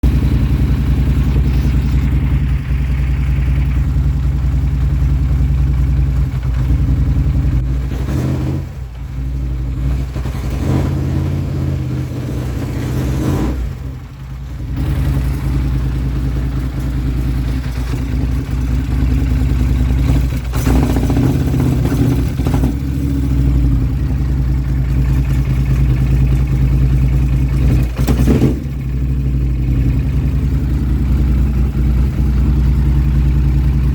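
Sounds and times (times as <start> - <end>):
engine running roughly: 0.0 - 33.9
engine backfire pops: 27.5 - 29.1.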